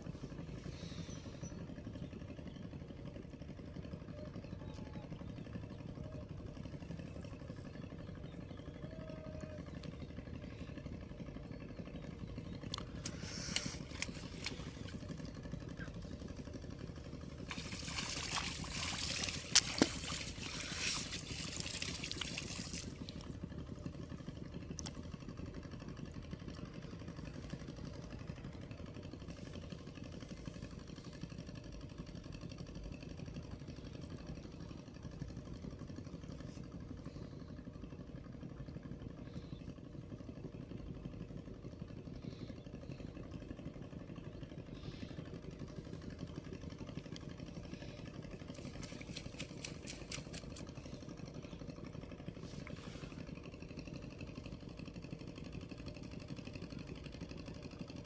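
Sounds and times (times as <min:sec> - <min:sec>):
water splashing and trickling: 0:16.0 - 0:23.6.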